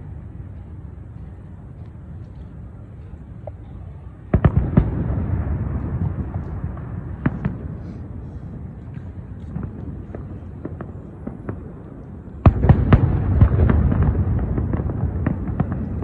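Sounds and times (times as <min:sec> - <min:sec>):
fireworks crackling and rumble: 0:00.0 - 0:16.0
fireworks bangs: 0:03.4 - 0:16.0.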